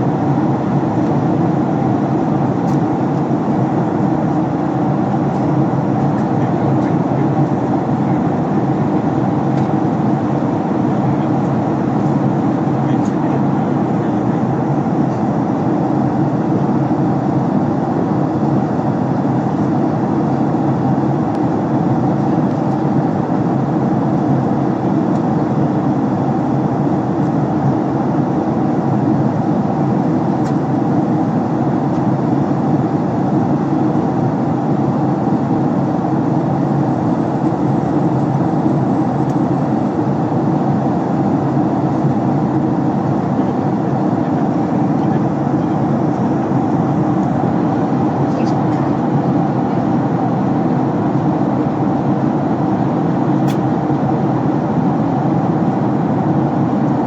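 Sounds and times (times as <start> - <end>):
airliner cabin drone: 0.0 - 57.0.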